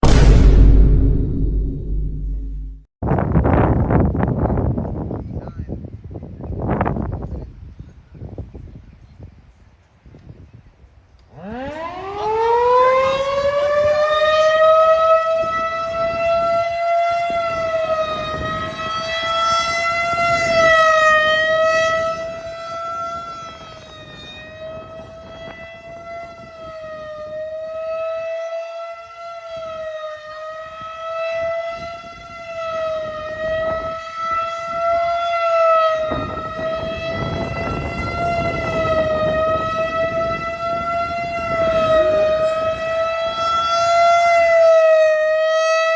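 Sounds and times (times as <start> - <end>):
low rushing noise: 0.0 - 2.9
tornado siren wailing: 11.2 - 45.9.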